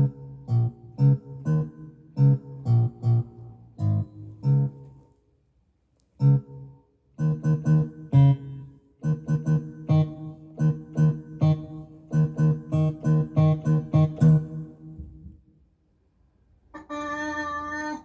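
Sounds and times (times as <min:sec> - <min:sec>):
acoustic guitar strumming: 0:09.0 - 0:15.0.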